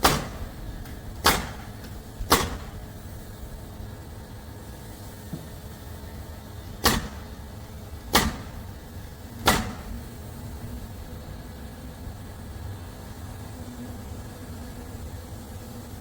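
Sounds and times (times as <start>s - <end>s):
nails driven into wood: 0.0s - 2.8s, 6.8s - 7.2s, 8.1s - 8.6s, 9.4s - 10.0s.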